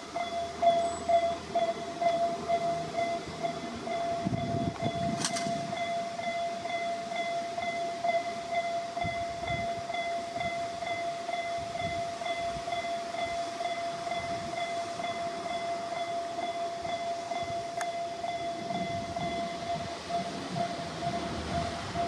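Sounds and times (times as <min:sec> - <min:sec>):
passing train rumble: 0:00.0 - 0:22.0.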